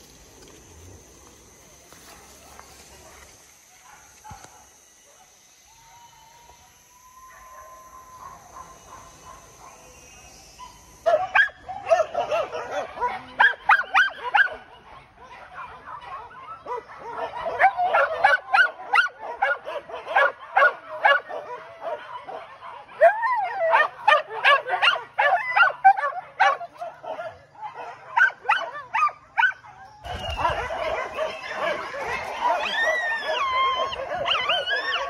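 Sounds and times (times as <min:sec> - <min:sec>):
dogs yelping and barking: 0:07.2 - 0:35.0.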